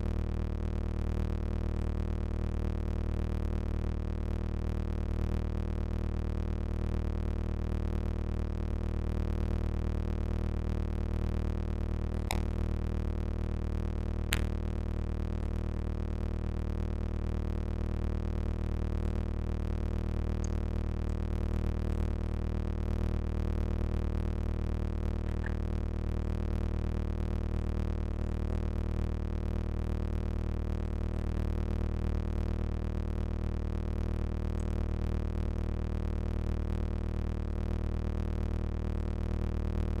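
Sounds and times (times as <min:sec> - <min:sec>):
steady low hum: 0:00.0 - 0:40.0
faint ticks: 0:20.3 - 0:22.1.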